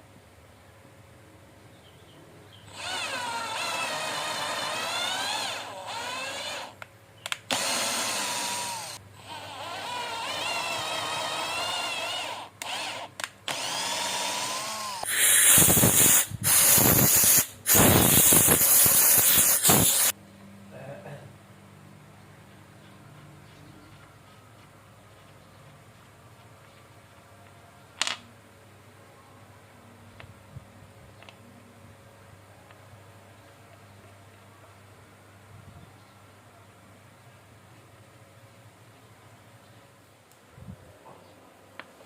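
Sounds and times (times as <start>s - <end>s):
electric motor whining: 2.7s - 6.8s, 7.5s - 20.1s
harsh grinding noise: 7.5s - 20.2s.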